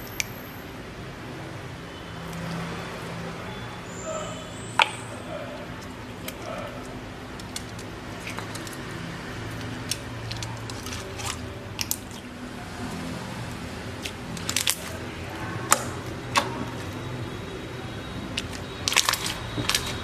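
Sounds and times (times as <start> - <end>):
hands squishing slime: 4.8 - 17.0, 18.3 - 20.0.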